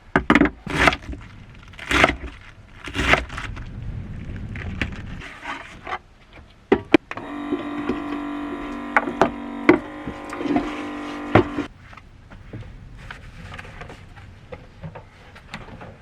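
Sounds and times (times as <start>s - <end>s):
small electric motor humming: 7.1s - 11.7s.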